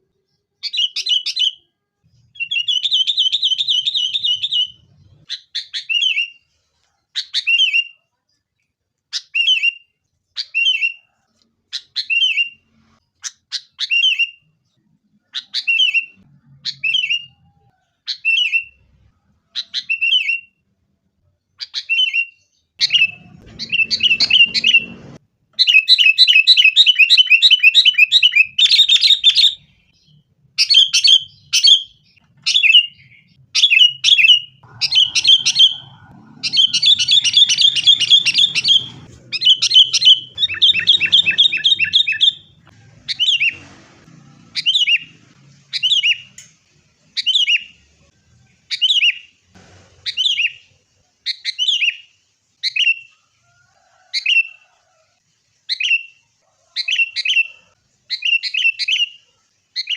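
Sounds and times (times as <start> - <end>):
bulbuls chattering: 22.8 - 25.2, 32.2 - 43.8.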